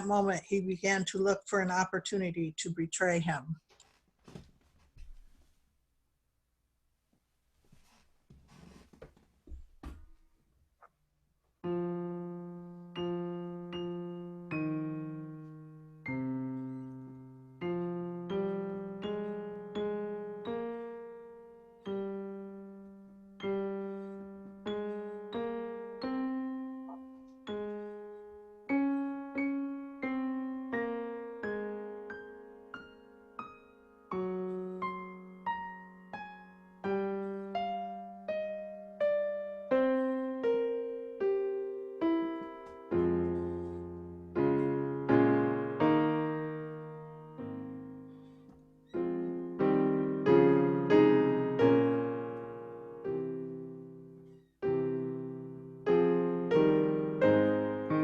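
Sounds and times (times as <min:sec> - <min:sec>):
slow solo piano melody: 0:11.6 - 0:58.0.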